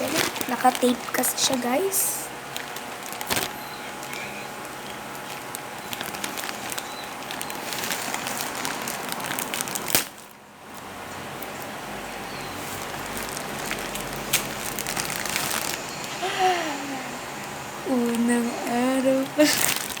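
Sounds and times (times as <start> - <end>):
sharp paper crack: 0.0 - 1.7, 2.4 - 11.8, 12.6 - 16.2, 19.4 - 20.0
wrapping paper crinkling: 0.0 - 20.0
tape pulled off package: 2.6 - 4.2, 5.2 - 10.3, 13.0 - 16.0.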